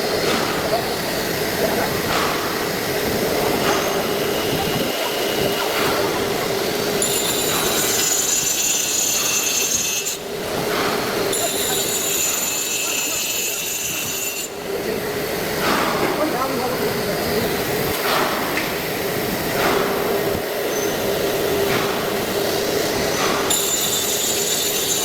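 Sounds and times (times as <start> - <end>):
router cutting wood: 6.8 - 10.3, 11.3 - 14.5.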